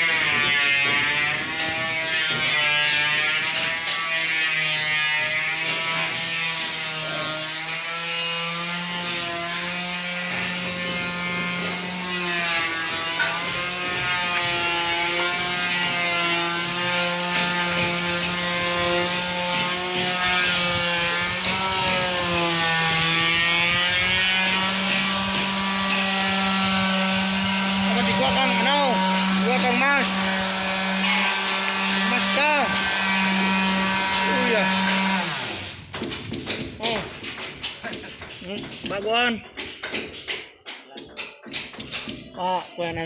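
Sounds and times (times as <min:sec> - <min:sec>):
power tool motor whine: 0:03.1 - 0:35.8.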